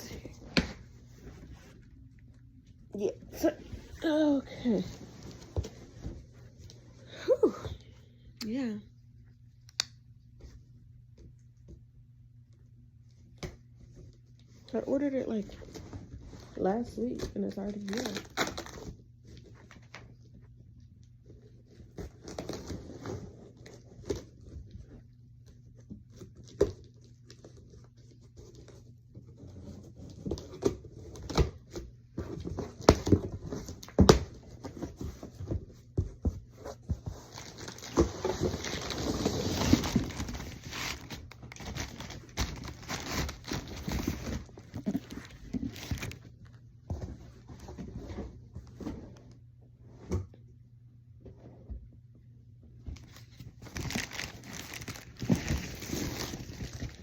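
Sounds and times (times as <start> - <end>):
cardboard tearing and rustling: 17.2 - 20.0, 21.6 - 24.8, 36.5 - 46.4, 53.1 - 57.0.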